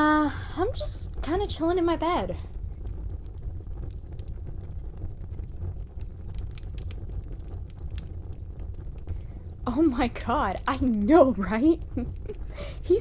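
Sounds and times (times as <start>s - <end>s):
small clicks and crackles: 0.0s - 13.0s
steady low rumble: 0.0s - 13.0s.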